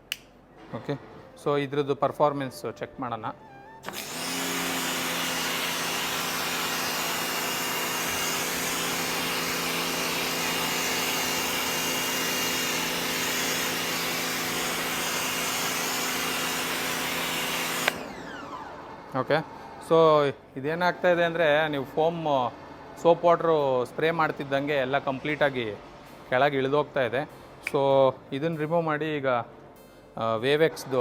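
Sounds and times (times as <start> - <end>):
pressure washer motor hum: 3.8 - 19.8.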